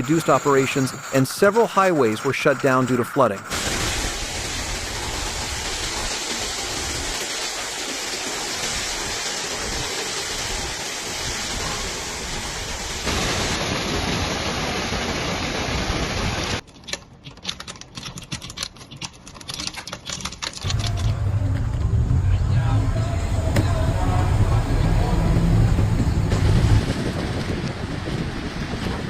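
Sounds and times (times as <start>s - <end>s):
running floodwater: 0.0s - 16.6s, 20.6s - 29.0s
torrential rain: 3.4s - 16.6s, 19.5s - 29.0s.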